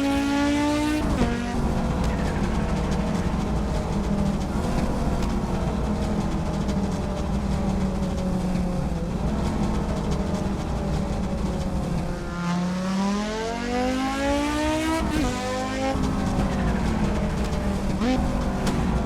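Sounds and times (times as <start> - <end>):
car engine running hard: 0.0 - 19.0.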